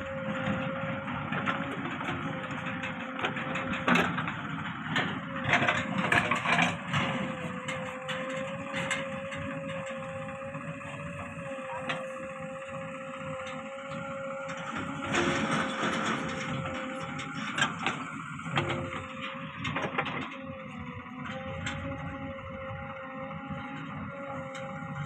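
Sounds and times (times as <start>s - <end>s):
backhoe engine whining: 0.0s - 25.0s
clatter and scraping: 0.3s - 12.3s, 13.4s - 20.4s.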